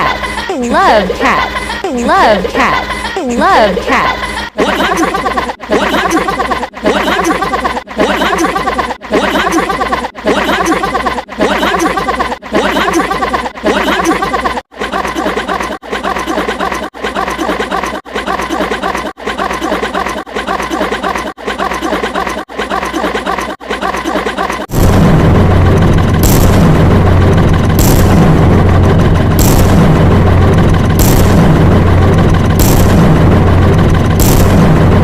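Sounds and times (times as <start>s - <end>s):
short pitched clip repeating: 24.7s - 35.0s
engine-like rumble: 24.8s - 35.0s.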